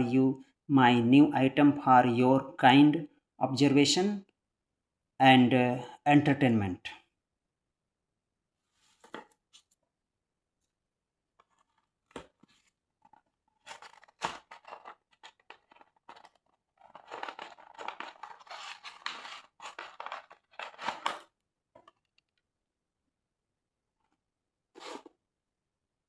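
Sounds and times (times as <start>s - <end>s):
scratchy rustling: 11.4s - 21.3s, 24.8s - 25.1s.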